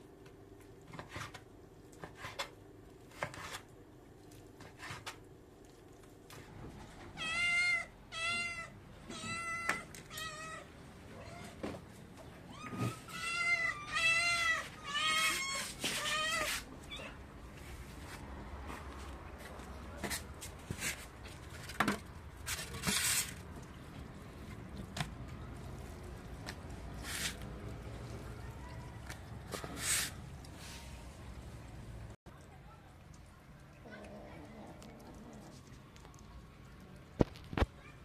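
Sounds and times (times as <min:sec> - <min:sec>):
cat meowing: 0:07.2 - 0:11.6, 0:12.5 - 0:17.2.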